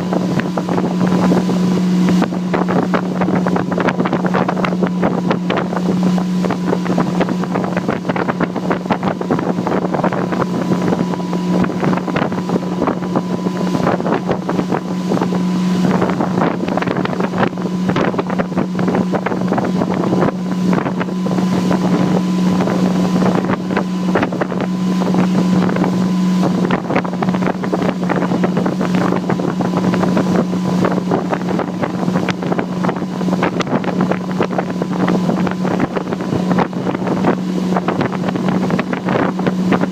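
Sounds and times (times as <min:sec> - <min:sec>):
motorboat engine droning: 0:00.0 - 0:39.9
water rushing and slapping: 0:00.0 - 0:39.9
wind buffeting microphone: 0:00.0 - 0:39.9.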